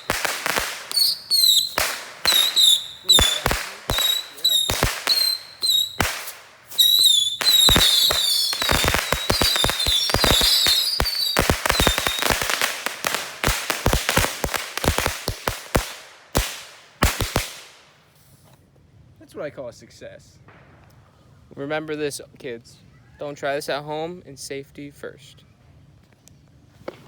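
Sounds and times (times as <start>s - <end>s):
bottle rocket whistles: 0.0s - 0.2s, 0.8s - 12.5s
firework pops and bangs: 0.0s - 18.5s.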